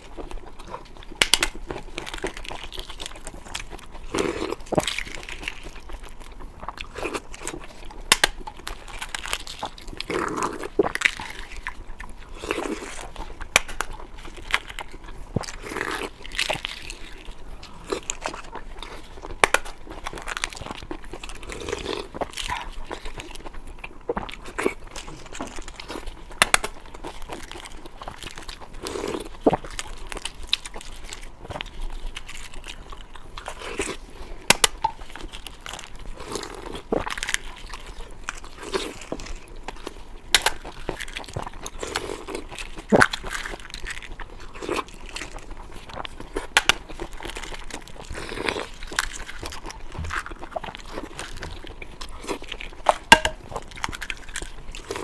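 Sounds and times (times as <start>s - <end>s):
sharp clicks and crunches: 0.0s - 5.8s
person chewing food: 0.0s - 55.0s.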